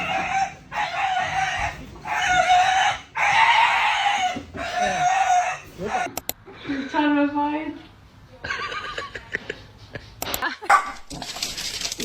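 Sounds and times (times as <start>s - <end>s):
chicken squawking loudly: 0.0s - 6.1s.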